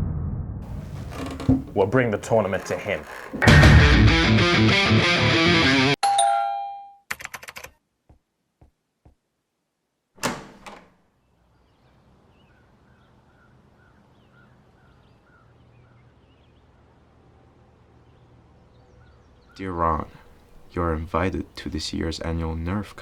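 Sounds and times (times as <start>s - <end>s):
loud thunk: 1.1s - 1.8s, 3.3s - 4.0s.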